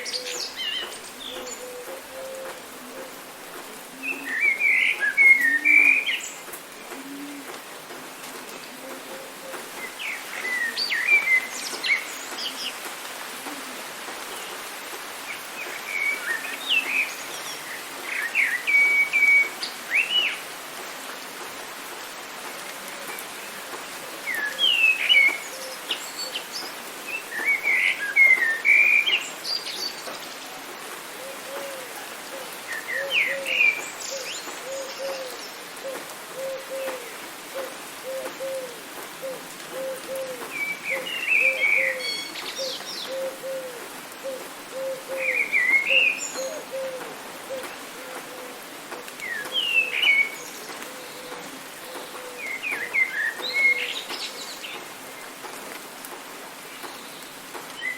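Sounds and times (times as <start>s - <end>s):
rain hissing: 0.0s - 57.9s
songbirds chirping: 0.0s - 57.9s
low repeated bird call: 31.2s - 54.8s.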